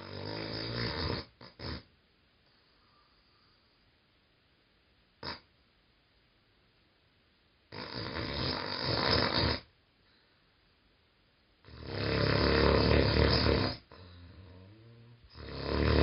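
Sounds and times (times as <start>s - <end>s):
loud snoring: 0.0s - 1.9s, 5.2s - 5.5s, 7.7s - 9.7s, 11.6s - 16.0s.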